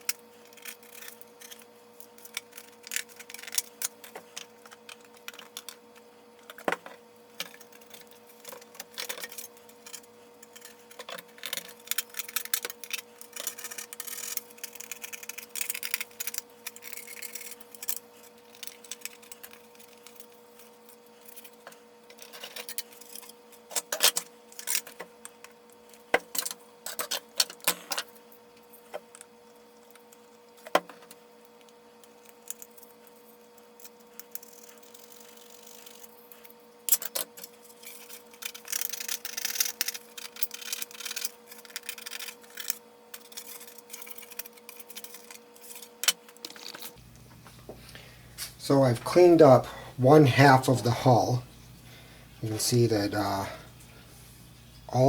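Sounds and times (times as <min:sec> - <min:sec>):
faint hum: 0:27.9 - 0:55.0.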